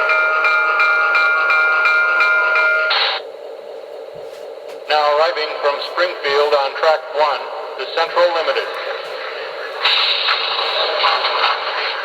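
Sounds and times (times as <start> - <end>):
locomotive bell ringing: 0.0 - 3.2
low background hum: 0.0 - 12.0.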